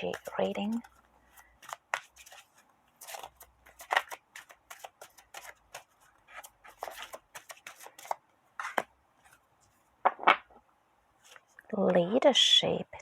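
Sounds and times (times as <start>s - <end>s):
cards shuffled and flicked: 0.0s - 9.4s.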